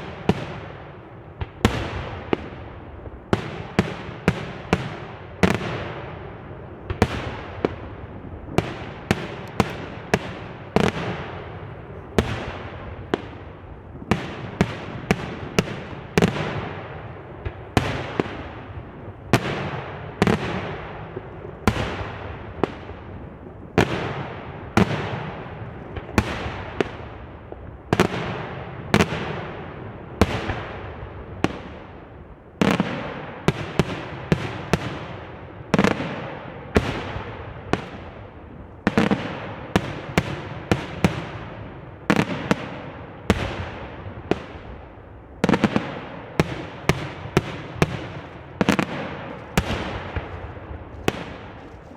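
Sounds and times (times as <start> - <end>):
fireworks bursting: 6.9 - 28.4, 42.1 - 51.9.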